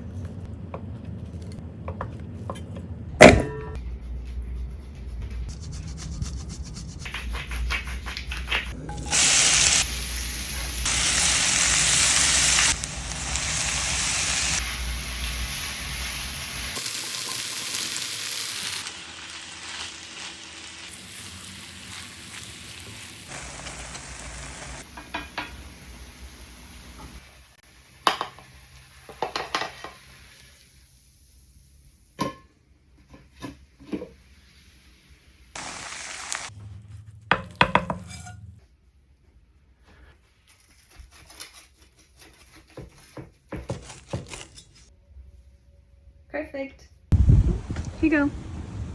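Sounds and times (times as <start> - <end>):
cheese sizzling in a pan: 9.0 - 31.8, 34.3 - 36.5
stirring and scraping: 40.0 - 44.8.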